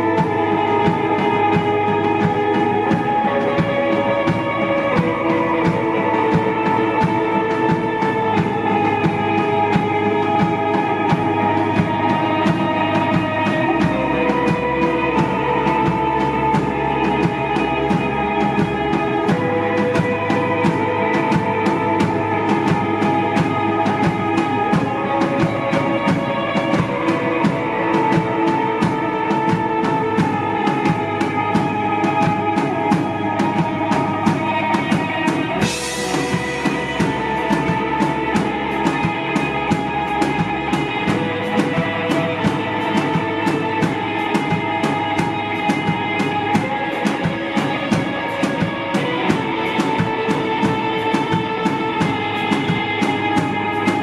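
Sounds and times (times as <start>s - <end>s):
bass guitar sustaining notes: 0.0s - 54.0s
drum kit beat: 0.0s - 54.0s
electric guitar: 0.0s - 54.0s
cymbal crash: 35.6s - 42.3s.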